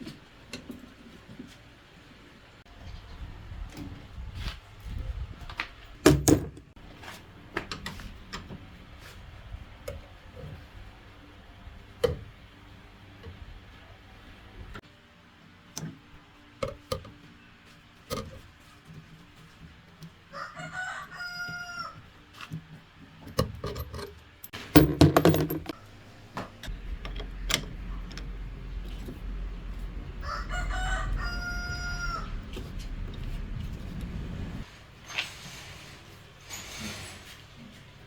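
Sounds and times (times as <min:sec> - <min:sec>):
rooster crowing: 0:20.3 - 0:22.0, 0:29.9 - 0:33.2
clattering knocks: 0:24.8 - 0:25.8.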